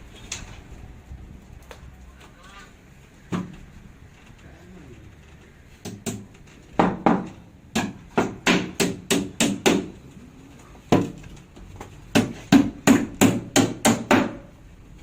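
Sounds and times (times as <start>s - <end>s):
hammer striking nails into wood: 5.8s - 9.9s, 12.1s - 14.5s.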